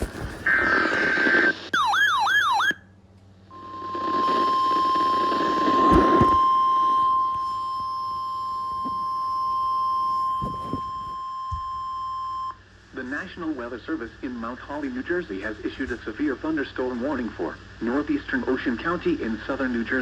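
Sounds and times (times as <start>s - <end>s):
static: 0.0s - 1.9s
steady warning alarm tone: 1.8s - 2.8s, 3.5s - 12.6s.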